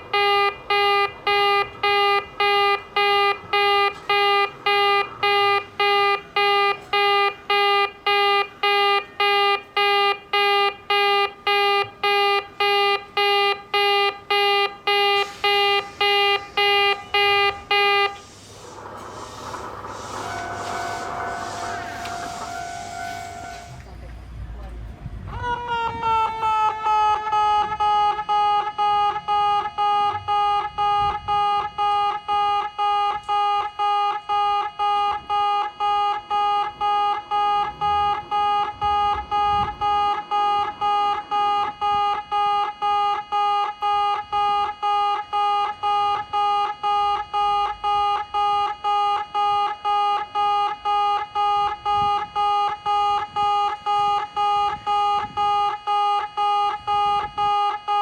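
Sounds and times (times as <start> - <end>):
level crossing bell ringing: 19.8 - 23.8.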